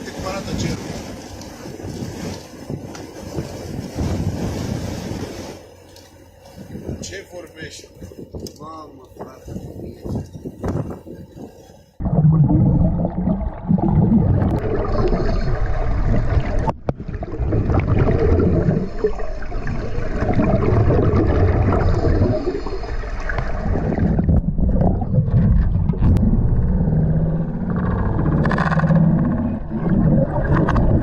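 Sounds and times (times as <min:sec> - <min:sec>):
rushing churning water: 0:12.2 - 0:26.4.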